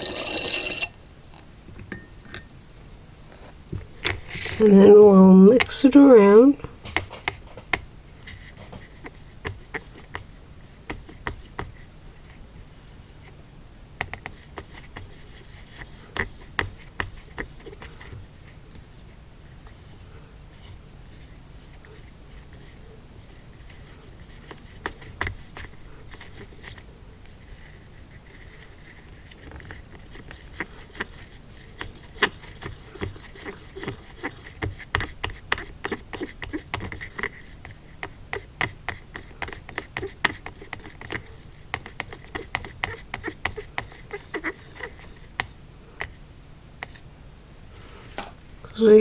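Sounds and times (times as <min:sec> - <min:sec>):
stirrer scraping and clicking in cup: 0:03.8 - 0:04.9, 0:05.5 - 0:12.4, 0:14.0 - 0:18.8, 0:21.2 - 0:46.2.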